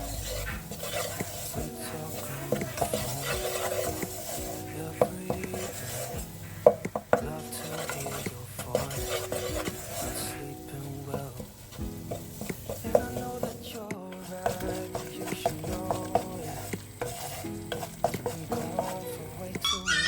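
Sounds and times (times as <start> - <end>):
soft background music: 0.0 - 20.0
spoon stirring in cooking pot: 0.0 - 20.0
utensil clinking against metal: 12.1 - 19.7.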